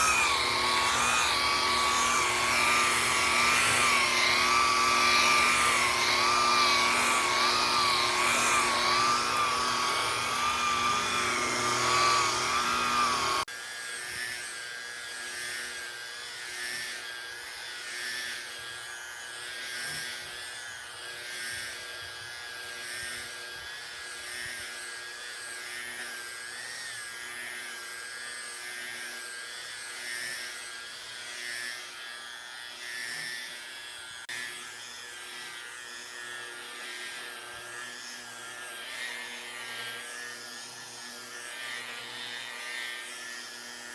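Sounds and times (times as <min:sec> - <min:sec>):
steady machine whine: 0:00.0 - 0:14.5
power tool whining: 0:00.0 - 0:43.9.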